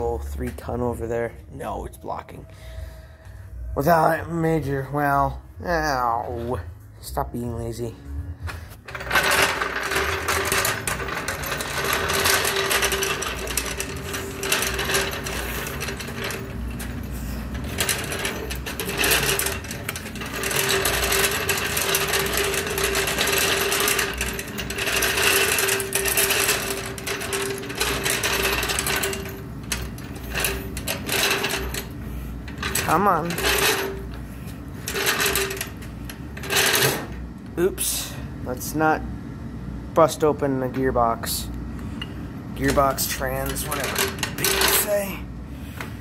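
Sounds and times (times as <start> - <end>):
scissor jack whirring and rattling: 8.9 - 31.9.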